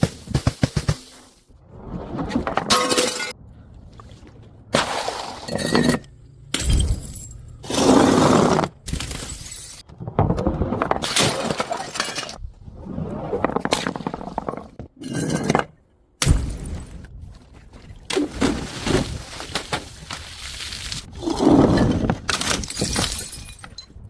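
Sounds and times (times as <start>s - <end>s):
glass bottles smashing: 8.9s - 9.8s, 22.3s - 23.9s.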